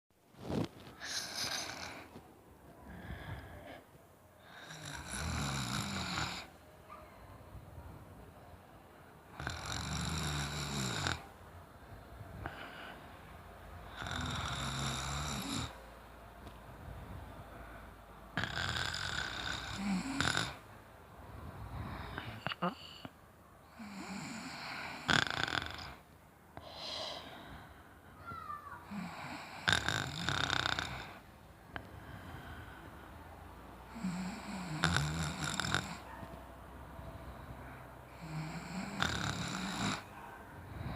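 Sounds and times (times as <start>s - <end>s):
quiet breathing: 0.4s - 40.9s
person snoring loudly: 1.0s - 2.1s, 4.5s - 6.5s, 9.3s - 11.2s, 13.9s - 15.8s, 18.4s - 20.6s, 23.7s - 26.0s, 28.9s - 31.2s, 33.9s - 36.0s, 38.1s - 40.1s.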